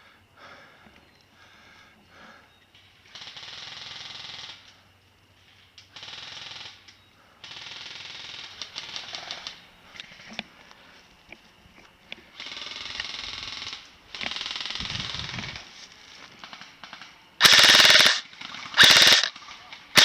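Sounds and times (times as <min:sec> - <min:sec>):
single sharp shots: 0:17.4 - 0:18.2, 0:18.8 - 0:19.3
airsoft guns firing bursts: 0:17.4 - 0:19.4.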